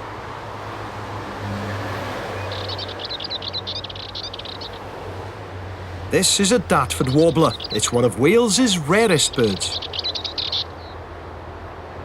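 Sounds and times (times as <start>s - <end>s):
traffic hum: 0.0s - 12.0s
bird singing high notes: 6.2s - 10.7s.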